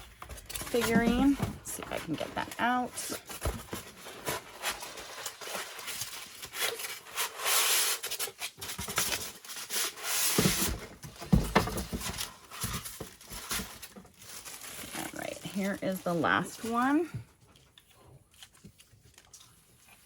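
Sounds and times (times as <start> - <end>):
cardboard rubbing and scraping: 0.6 - 8.3.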